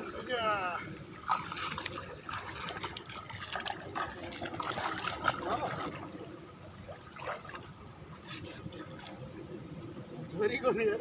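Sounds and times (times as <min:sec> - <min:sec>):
water splashing: 0:00.0 - 0:07.8
water trickling: 0:00.0 - 0:09.3.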